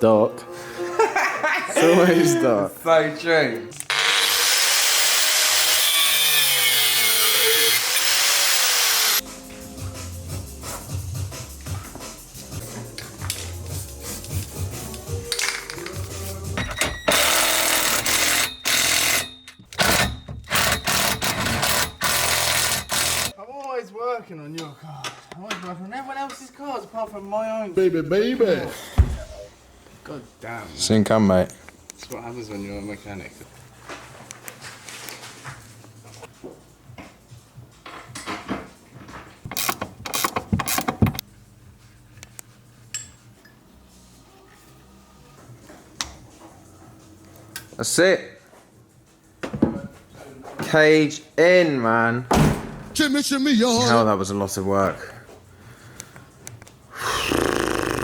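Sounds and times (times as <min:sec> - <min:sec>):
angle grinder cutting steel: 0:03.8 - 0:09.2, 0:20.5 - 0:23.3
ratchet wrench clicking: 0:17.1 - 0:23.3, 0:39.5 - 0:41.0.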